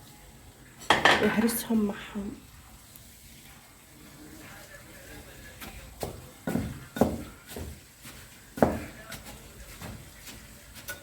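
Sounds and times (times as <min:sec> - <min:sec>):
pestle pounding in a mortar: 0:05.6 - 0:10.8.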